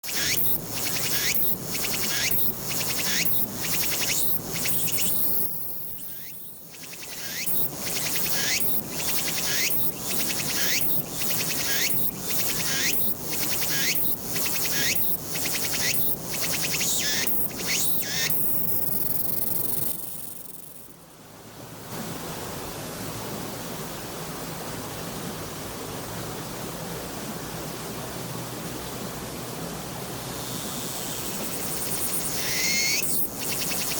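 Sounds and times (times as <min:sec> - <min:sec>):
cicada singing rasping phrases: 0:00.0 - 0:20.9, 0:30.4 - 0:33.9
cicada steady buzz: 0:00.0 - 0:21.0, 0:30.2 - 0:33.9
even high hiss: 0:00.0 - 0:21.1, 0:28.6 - 0:33.9.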